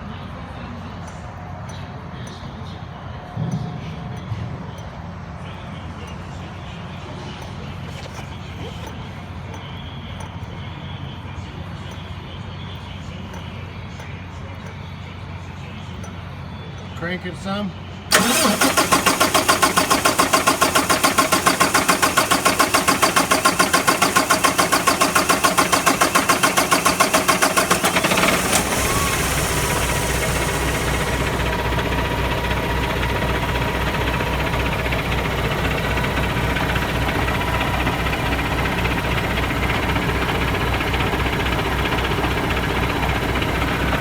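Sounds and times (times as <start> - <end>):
diesel truck engine cranking: 7.0 - 9.0, 18.1 - 44.0
diesel engine idling: 18.1 - 44.0.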